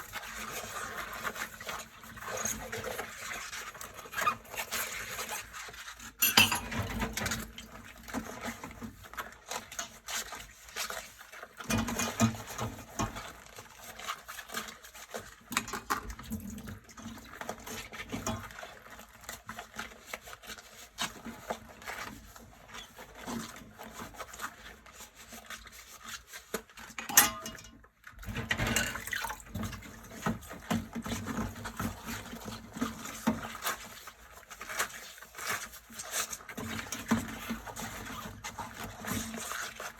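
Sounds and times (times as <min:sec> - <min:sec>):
water and scrubbing: 0:00.0 - 0:39.9
dishes clinking and scraping: 0:06.2 - 0:07.2, 0:27.0 - 0:27.8, 0:28.4 - 0:29.4.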